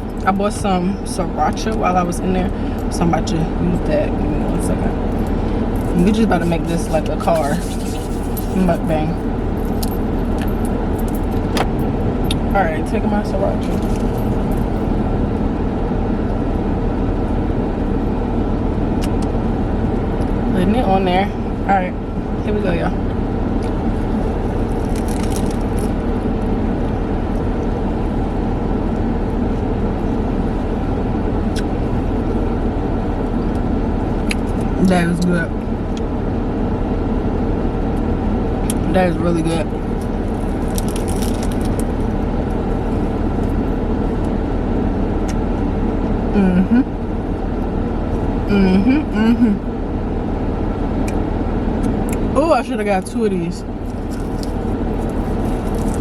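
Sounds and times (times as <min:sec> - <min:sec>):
car cabin rumble: 0:00.0 - 0:56.0.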